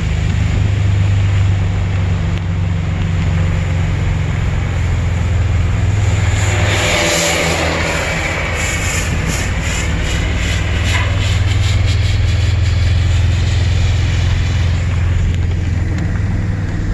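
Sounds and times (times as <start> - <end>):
vehicle engine humming: 0.0 - 16.9
rushing hiss: 3.3 - 16.2.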